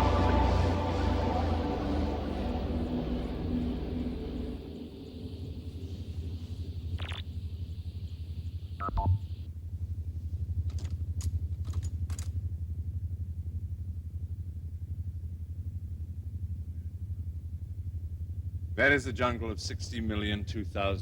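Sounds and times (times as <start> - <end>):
pulsing electronic hum: 0.0 - 10.6
high electronic chirps: 8.8 - 9.3.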